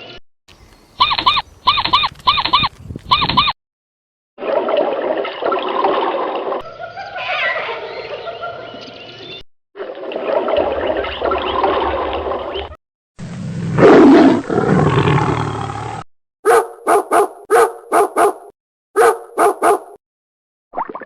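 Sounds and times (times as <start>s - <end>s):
dog barking: 16.4s - 20.0s.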